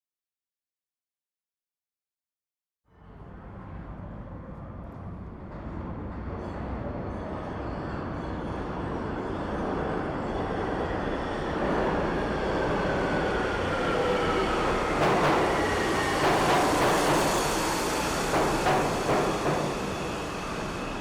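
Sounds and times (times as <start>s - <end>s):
subway train rumbling on tracks: 2.9s - 21.0s.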